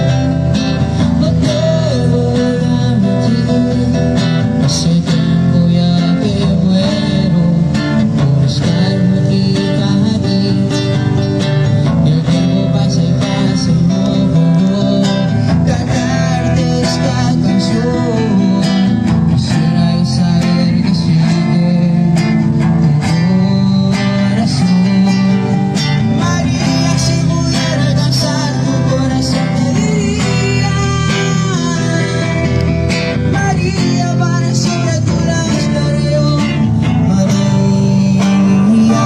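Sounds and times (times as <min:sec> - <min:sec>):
guitar-led song through speaker: 0:00.0 - 0:39.0.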